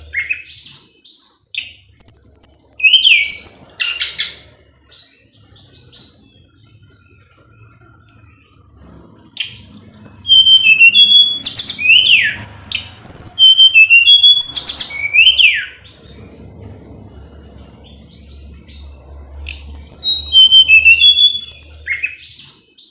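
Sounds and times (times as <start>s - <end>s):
bird chirping: 0.0s - 22.9s.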